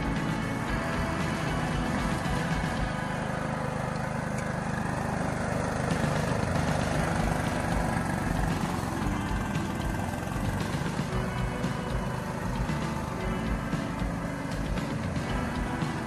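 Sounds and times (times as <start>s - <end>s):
riding mower engine running: 0.0s - 16.0s.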